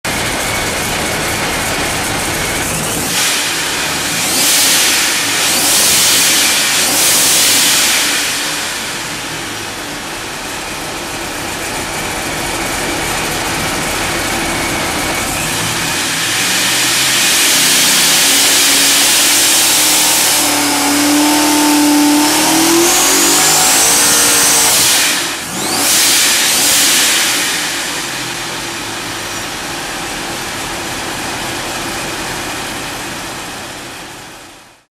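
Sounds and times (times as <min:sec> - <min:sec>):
car engine revving: 0:00.1 - 0:33.8
supercharger whine: 0:00.1 - 0:34.7.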